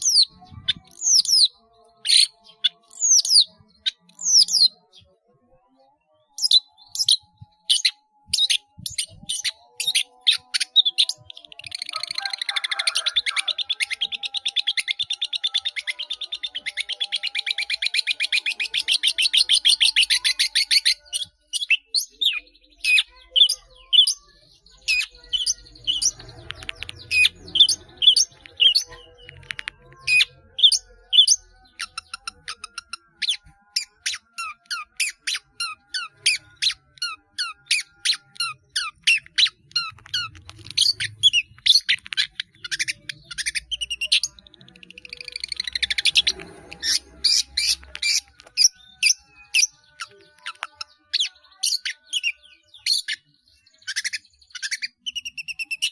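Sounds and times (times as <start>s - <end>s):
bird singing sharp chirps and whistles: 45.1s - 55.9s.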